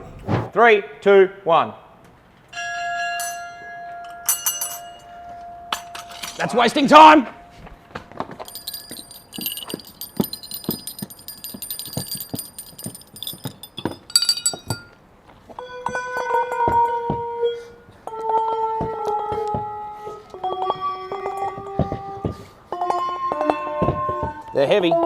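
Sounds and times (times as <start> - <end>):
large bells ringing: 2.5 - 15.0
small high-pitched bells struck: 2.6 - 6.8, 8.4 - 15.0.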